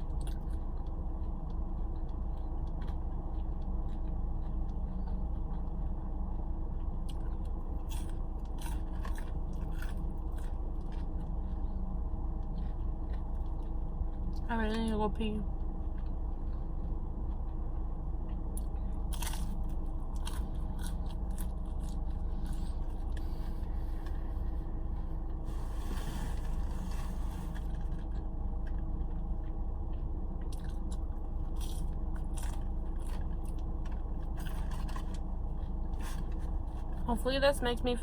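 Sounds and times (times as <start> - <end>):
person chewing crunchy food: 0.0 - 37.1
steady low hum: 0.0 - 38.0
rustle or scrape: 25.5 - 27.9.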